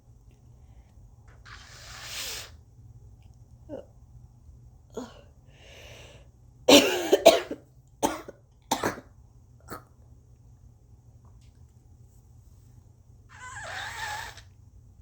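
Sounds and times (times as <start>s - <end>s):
person breathing in: 5.0s - 6.3s
person coughing phlegmy coughs: 6.7s - 9.9s.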